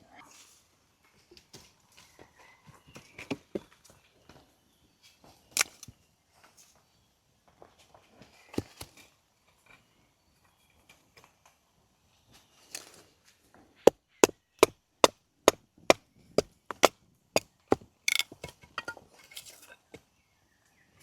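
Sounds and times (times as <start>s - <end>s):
wood chopping strikes: 14.2s - 18.5s.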